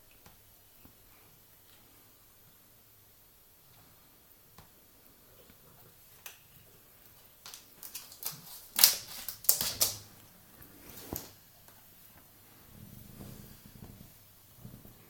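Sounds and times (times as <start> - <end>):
cat scrabbling over plastic cable tie: 7.4 - 10.1.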